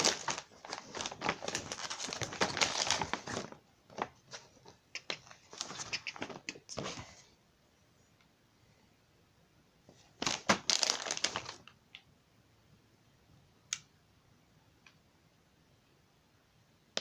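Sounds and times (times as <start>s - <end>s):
packaging crinkling and rustling: 0.0s - 7.1s, 10.2s - 11.8s.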